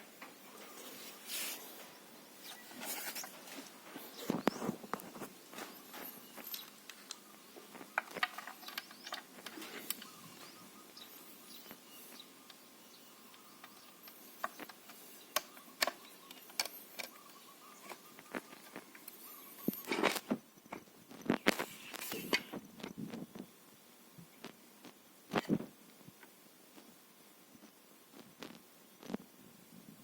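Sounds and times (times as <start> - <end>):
tool being handled: 2.5 - 10.6.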